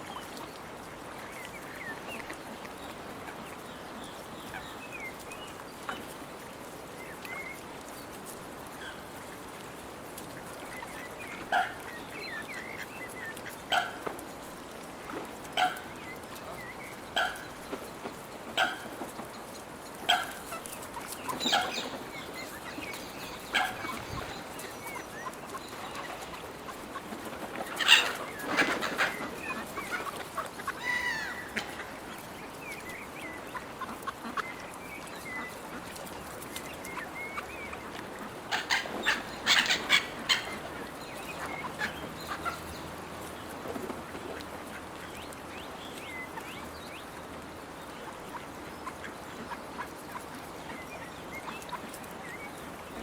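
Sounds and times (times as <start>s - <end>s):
gulls squawking: 21.2s - 31.9s, 38.5s - 42.8s.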